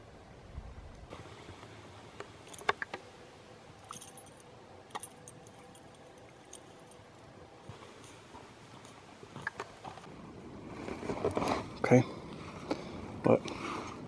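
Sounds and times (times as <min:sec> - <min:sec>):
small hard objects clinking: 0:03.8 - 0:07.2.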